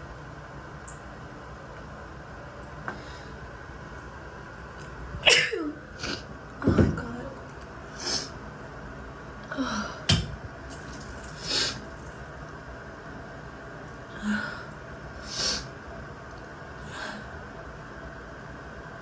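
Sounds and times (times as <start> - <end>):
woman sneezing: 5.2 - 6.3.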